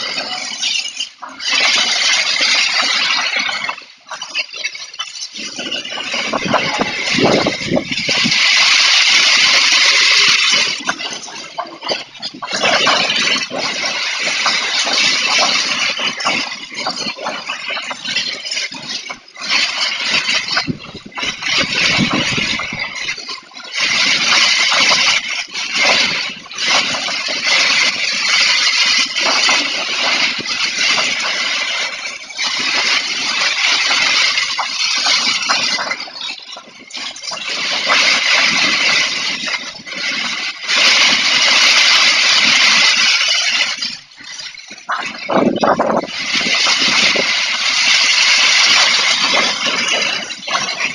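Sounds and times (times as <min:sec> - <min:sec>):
heavy rain: 0:05.0 - 0:17.4, 0:37.2 - 0:50.9
gusting wind: 0:06.0 - 0:11.5, 0:20.2 - 0:23.2, 0:44.9 - 0:50.9.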